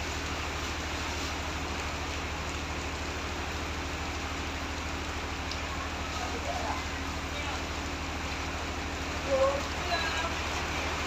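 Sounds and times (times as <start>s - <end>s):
heavy rain hissing: 0.0s - 11.0s.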